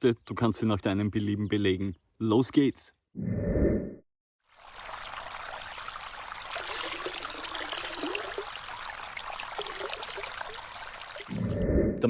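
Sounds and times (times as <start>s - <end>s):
running water gurgling: 4.4s - 11.6s.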